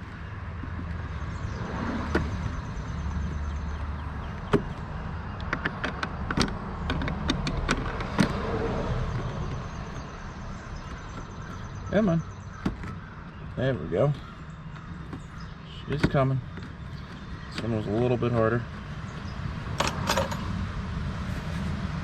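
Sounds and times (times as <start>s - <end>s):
sharp clicks and knocks of prying: 4.3s - 8.4s, 19.7s - 20.5s.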